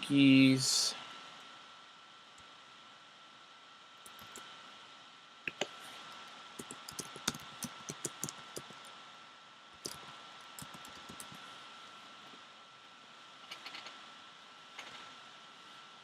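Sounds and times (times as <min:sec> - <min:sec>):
computer keyboard and mouse clicks: 0:04.0 - 0:04.4, 0:06.6 - 0:08.9, 0:09.8 - 0:10.0, 0:10.6 - 0:11.4.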